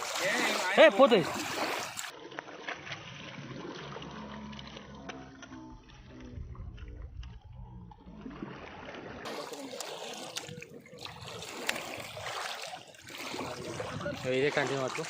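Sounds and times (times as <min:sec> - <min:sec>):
river water trickling and lapping: 0:00.0 - 0:15.0
low rumble: 0:03.0 - 0:09.2.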